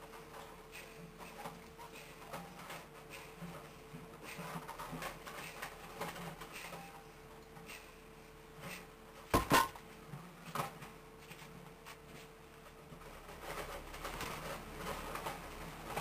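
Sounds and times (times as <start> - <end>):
faint room hum: 0.0 - 16.0
sharp knocks: 9.4 - 9.8.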